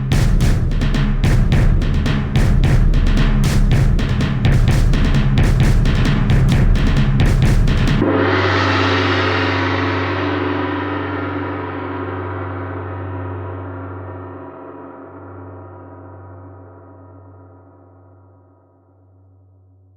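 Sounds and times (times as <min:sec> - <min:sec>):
drum roll: 0:00.0 - 0:10.3.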